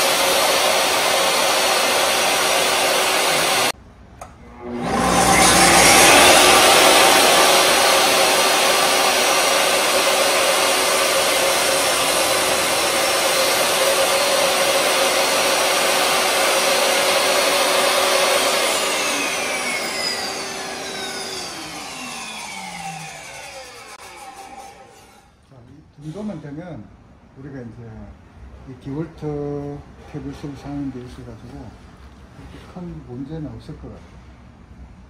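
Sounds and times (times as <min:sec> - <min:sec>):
table saw motor whining: 0:00.0 - 0:25.3.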